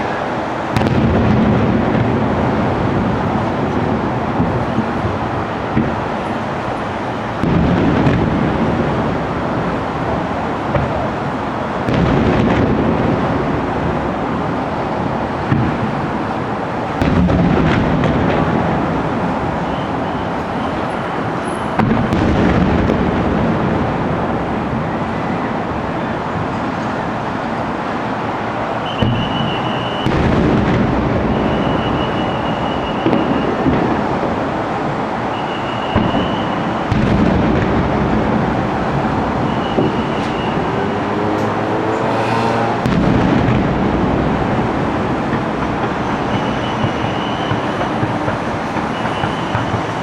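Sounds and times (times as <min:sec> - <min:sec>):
background noise: 0:00.0 - 0:50.0
fireworks booming: 0:00.0 - 0:50.0
rolling rumble: 0:42.8 - 0:50.0.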